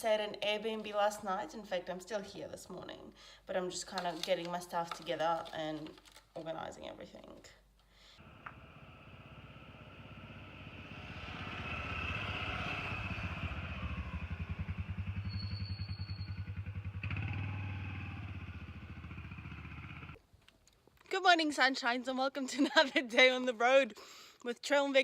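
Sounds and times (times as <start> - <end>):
vehicle engine running: 8.2 - 20.2.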